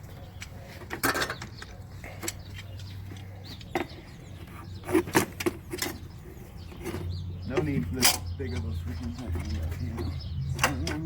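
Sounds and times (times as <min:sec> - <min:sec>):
hand tools clinking on metal: 0:06.7 - 0:11.0.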